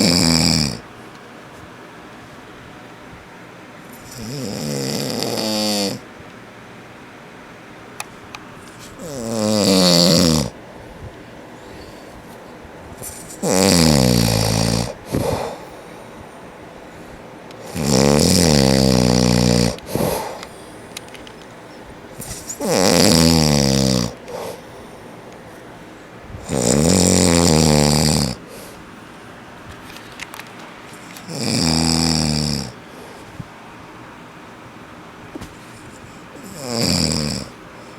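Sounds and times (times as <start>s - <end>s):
man snoring: 0.0s - 0.9s, 4.0s - 6.1s, 9.0s - 10.6s, 13.0s - 15.9s, 17.6s - 20.6s, 22.2s - 24.7s, 26.4s - 28.8s, 31.2s - 32.8s, 36.4s - 37.9s
snort: 0.0s - 0.9s, 3.9s - 6.0s, 8.7s - 10.6s, 13.0s - 16.2s, 16.9s - 20.8s, 22.1s - 25.0s, 26.4s - 28.8s, 31.0s - 33.4s, 35.6s - 37.9s
quiet breathing: 10.4s - 30.2s, 32.6s - 34.0s, 35.4s - 36.7s, 37.4s - 37.9s.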